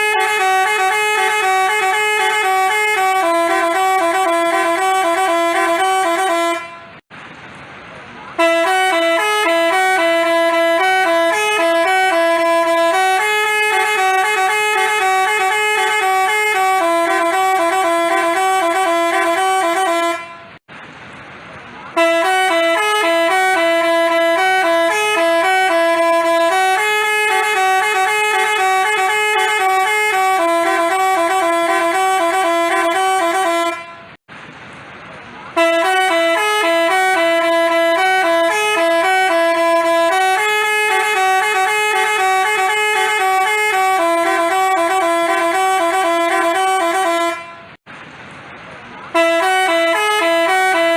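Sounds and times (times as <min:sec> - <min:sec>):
bus horn playing tune: 0:00.0 - 0:07.0, 0:08.3 - 0:20.7, 0:21.9 - 0:34.2, 0:35.5 - 0:47.8, 0:49.1 - 0:50.9.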